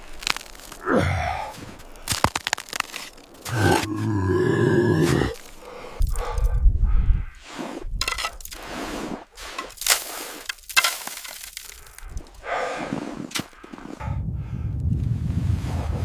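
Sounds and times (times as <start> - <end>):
sharp cracking and crunching: 0.0 - 6.4, 9.5 - 12.4.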